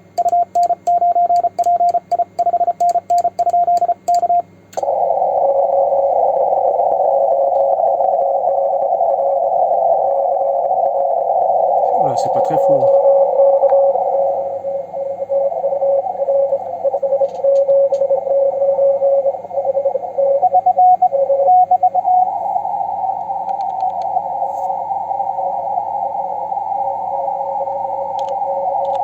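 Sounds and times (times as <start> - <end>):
weak morse code signal: 0.0 - 8.8, 11.6 - 22.3
faint high morse tone: 0.0 - 29.0
radio band hiss: 11.6 - 20.1.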